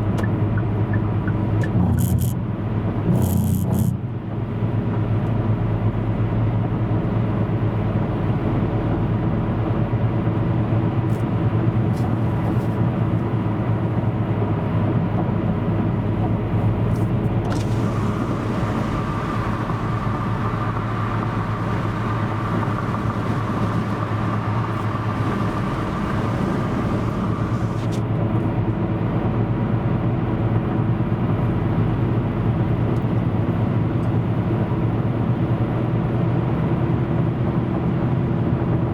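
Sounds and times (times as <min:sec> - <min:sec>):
high whine: 0:00.0 - 0:02.4, 0:03.0 - 0:04.0, 0:17.5 - 0:28.6
vehicle engine and road drone: 0:00.0 - 0:38.9.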